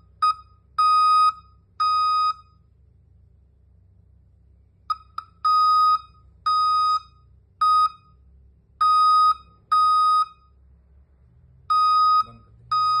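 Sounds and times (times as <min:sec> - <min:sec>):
alarm buzzer beeping: 0:04.9 - 0:08.2, 0:08.8 - 0:10.5, 0:11.7 - 0:13.0.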